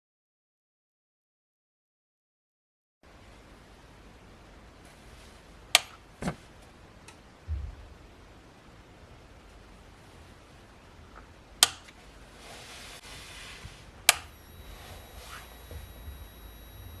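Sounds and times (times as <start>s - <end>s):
sharp switch clicks: 5.8s - 6.4s, 11.6s - 11.9s, 14.1s - 14.4s
faint high-pitched electrical whine: 13.9s - 17.0s.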